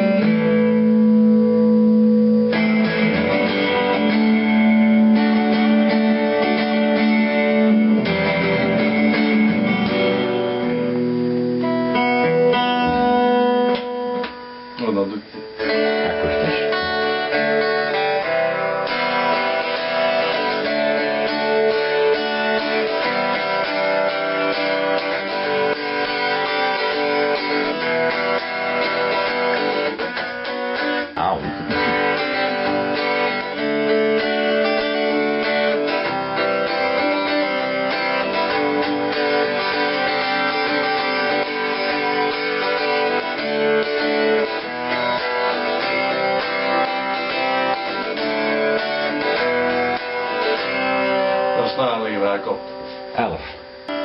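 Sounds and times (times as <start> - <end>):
electric guitar strummed chords: 0.0 - 54.0.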